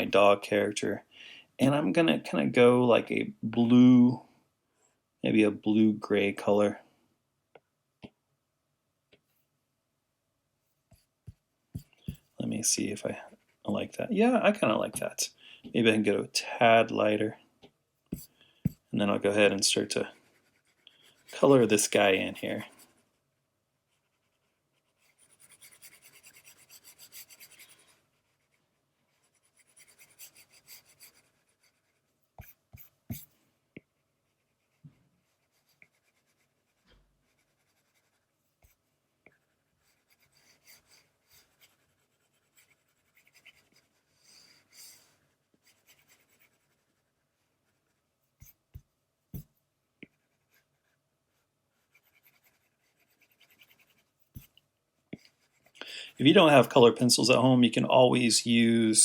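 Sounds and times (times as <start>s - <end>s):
stylus scratching on drawing tablet: 10.9s - 12.4s, 18.1s - 23.2s, 23.8s - 33.3s, 33.9s - 56.4s.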